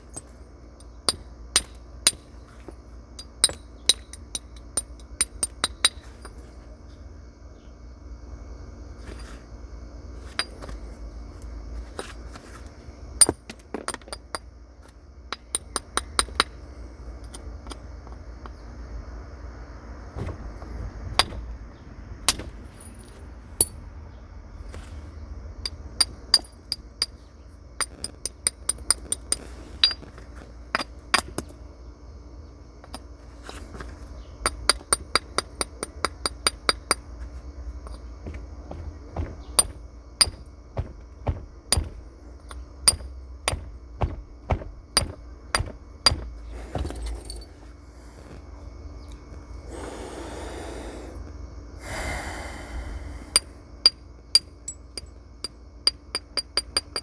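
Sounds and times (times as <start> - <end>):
stone striking flint: 27.8 - 31.6, 38.7 - 47.6.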